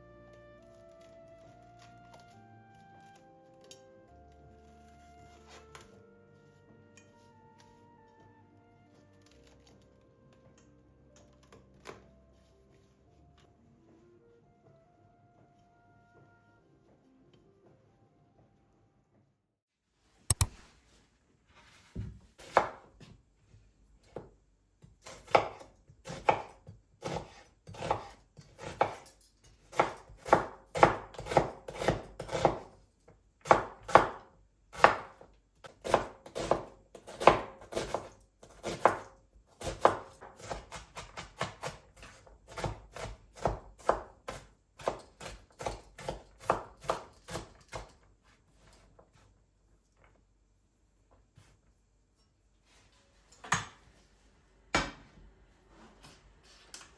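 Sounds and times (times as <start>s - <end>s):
knife chopping on cutting board: 20.3s - 20.6s, 21.9s - 23.1s, 25.0s - 29.1s, 29.7s - 32.7s, 33.4s - 47.9s.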